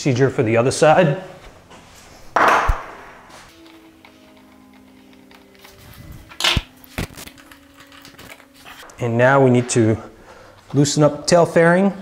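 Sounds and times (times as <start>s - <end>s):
faint background music: 3.3s - 12.0s.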